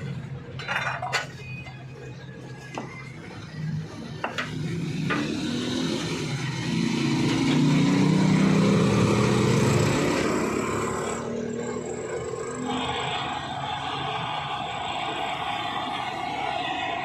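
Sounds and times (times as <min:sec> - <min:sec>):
small engine humming: 0:08.0 - 0:17.0.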